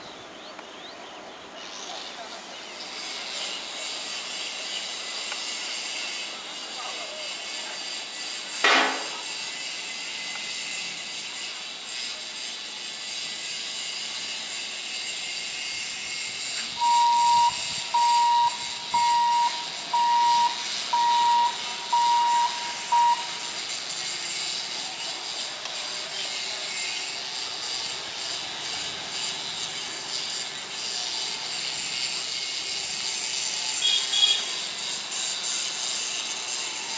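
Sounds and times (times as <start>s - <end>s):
steady hiss: 0.0s - 36.9s
short electronic beeps: 16.8s - 23.6s.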